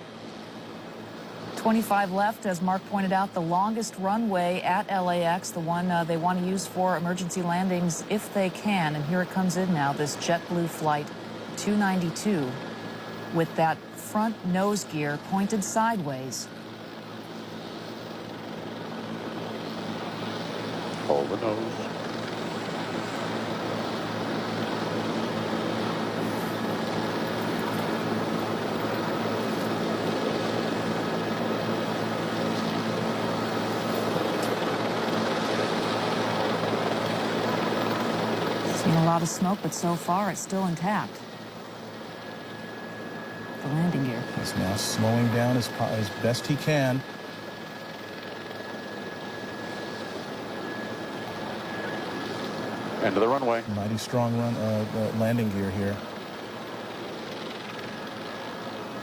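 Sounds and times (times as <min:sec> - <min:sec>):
low hum: 0:00.0 - 0:58.4
rushing aircraft noise: 0:00.0 - 0:59.0
thin high tone: 0:42.0 - 0:48.2
aircraft rushing noise: 0:43.4 - 0:47.4.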